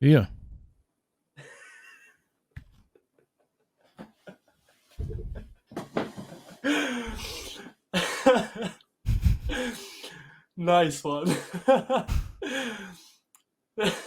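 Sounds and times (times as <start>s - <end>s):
thuds on microphone: 5.0s - 6.3s, 9.1s - 9.5s.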